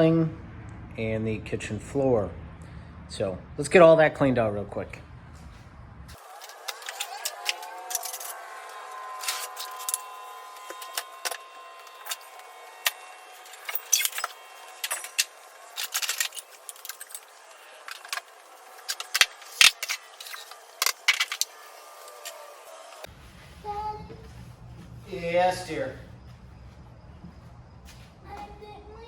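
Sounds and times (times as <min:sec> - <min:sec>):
objects clinking and knocking: 0:12.0 - 0:21.5.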